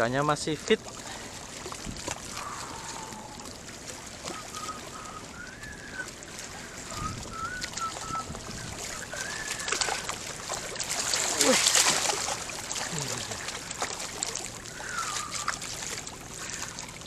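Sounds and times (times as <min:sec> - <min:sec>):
water noise: 0:00.0 - 0:17.0
faint wavering high tone: 0:04.3 - 0:10.1
wind noise: 0:06.8 - 0:09.2.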